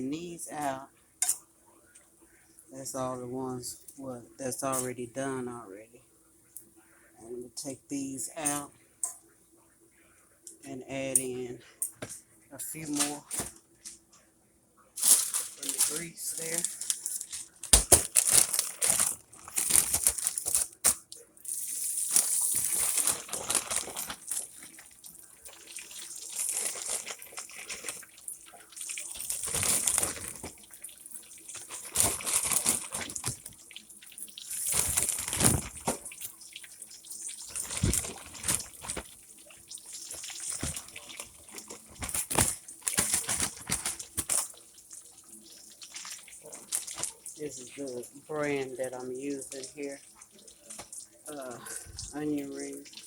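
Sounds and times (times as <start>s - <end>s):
onion rings deep-frying: 15.0s - 53.0s.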